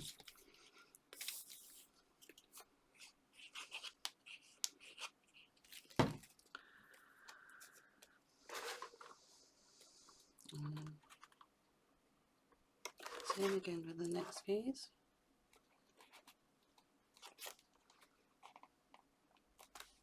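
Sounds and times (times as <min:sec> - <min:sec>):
paper rustling and scraping: 0:00.0 - 0:06.4, 0:08.4 - 0:09.4, 0:13.0 - 0:14.5
faint steady hiss: 0:00.0 - 0:20.0.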